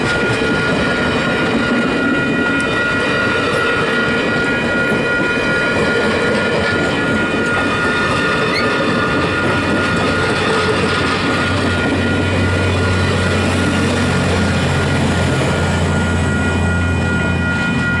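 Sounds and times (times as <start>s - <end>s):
high steady tones: 0.0s - 18.0s
train wheels rolling on rail: 0.0s - 18.0s.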